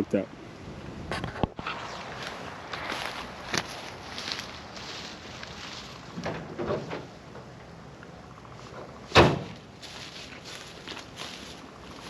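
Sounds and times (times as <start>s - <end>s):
footsteps: 1.2s - 6.4s, 8.6s - 12.0s
rustling: 8.5s - 12.0s.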